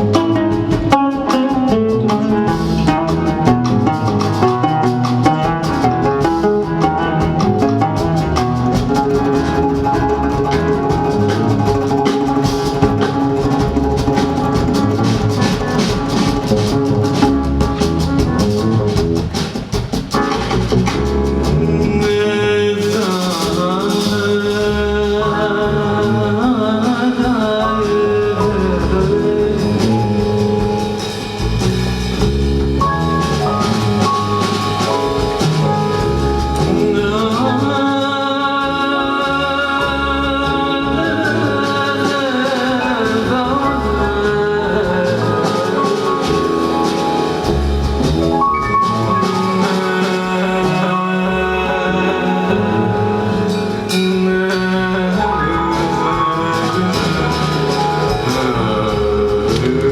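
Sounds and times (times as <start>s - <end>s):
music with plucked strings and drums: 0.0s - 59.9s
person singing: 21.3s - 31.4s, 32.8s - 59.9s.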